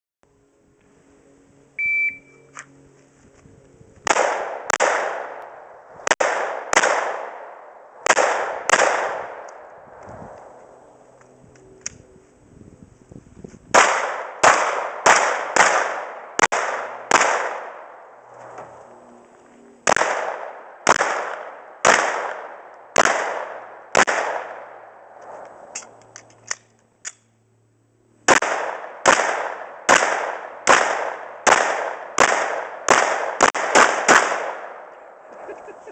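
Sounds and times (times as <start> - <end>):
shot timer beep: 1.8 - 2.6
handgun shots: 8.0 - 9.6.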